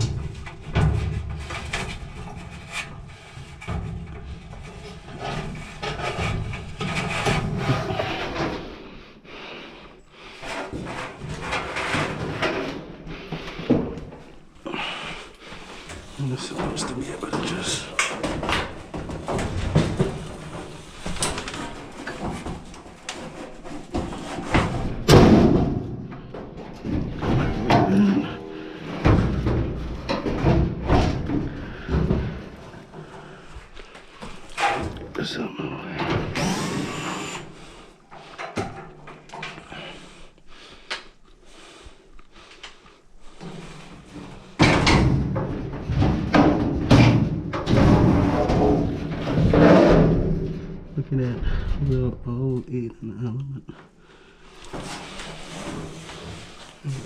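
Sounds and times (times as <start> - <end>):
dryer parts knocking and clattering: 0.0 - 8.6, 10.4 - 36.4, 38.1 - 40.1, 43.3 - 51.8
clicks and knocks of parts: 15.9 - 28.1.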